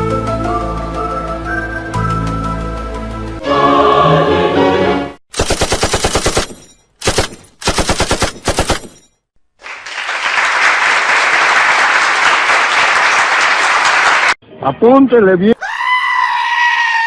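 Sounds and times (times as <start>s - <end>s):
automatic gunfire bursts: 5.3s - 9.0s.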